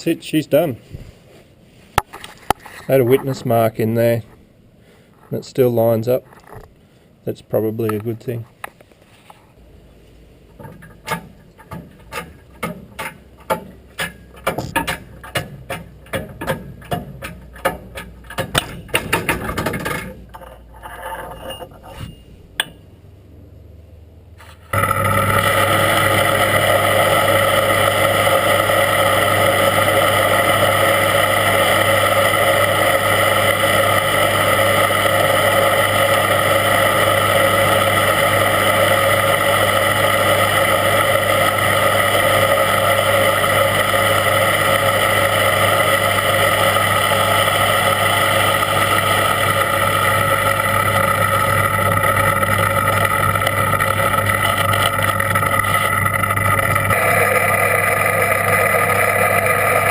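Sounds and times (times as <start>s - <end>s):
machine hum with whine: 9.0s - 59.9s
irregular clicks and knocks: 10.5s - 20.6s.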